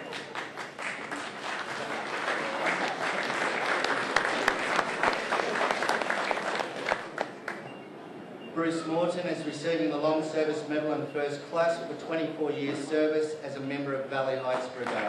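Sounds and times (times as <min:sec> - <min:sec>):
audience applauding: 0:00.0 - 0:07.7, 0:14.5 - 0:15.0.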